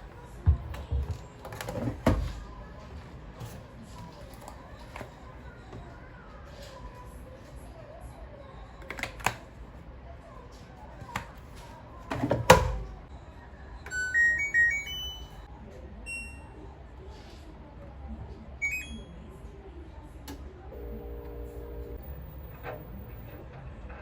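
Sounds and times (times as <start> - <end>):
appliance electronic beeps: 13.9 - 15.5, 18.6 - 19.1, 20.8 - 23.4.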